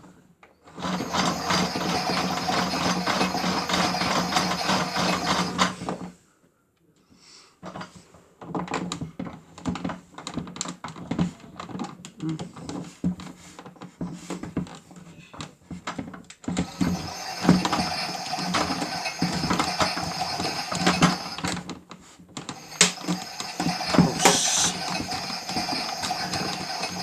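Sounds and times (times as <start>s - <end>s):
toy washing machine motor: 0.8s - 5.9s, 16.6s - 21.7s, 22.5s - 27.0s.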